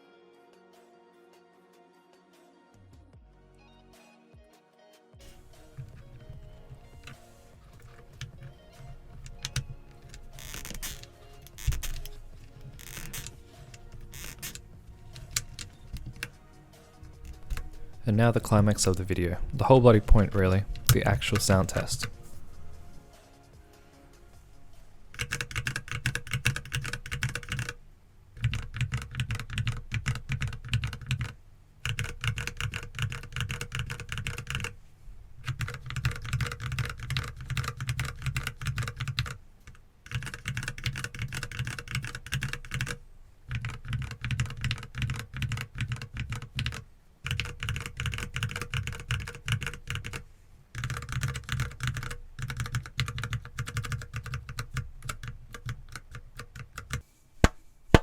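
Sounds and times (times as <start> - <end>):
mechanical keyboard typing: 5.2 - 19.0, 25.1 - 27.8, 28.4 - 34.8, 35.4 - 57.0.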